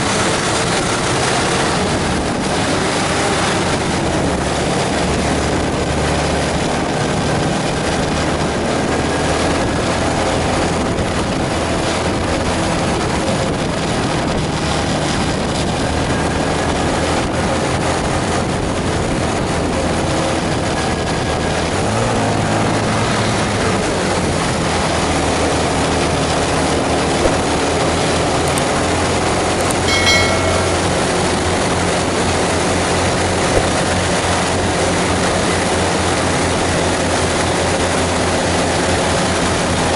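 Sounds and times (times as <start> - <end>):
bus engine: 0.0 - 29.8, 31.0 - 39.9
road noise: 19.9 - 39.9.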